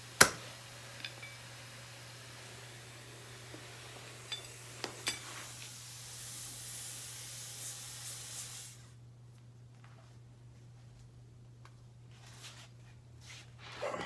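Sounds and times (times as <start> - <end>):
compressed air hissing: 0.0 - 8.9.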